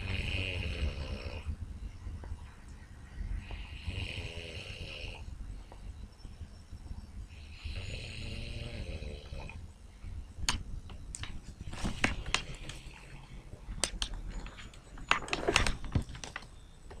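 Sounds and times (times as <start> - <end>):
man snoring: 0.0 - 1.5, 3.7 - 5.2, 7.4 - 9.6
sharp clicks and knocks: 10.4 - 12.9, 13.7 - 17.0.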